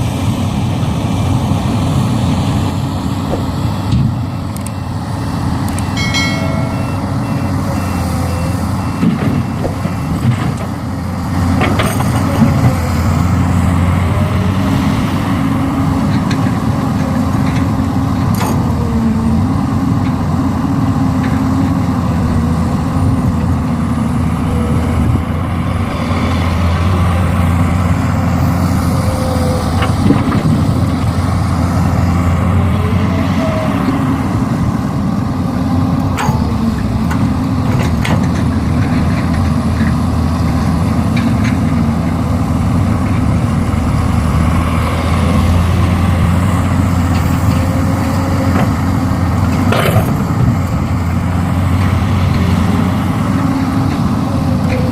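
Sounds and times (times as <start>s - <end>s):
diesel engine running: 0.0s - 54.9s
sharp metallic clanks: 5.9s - 7.2s.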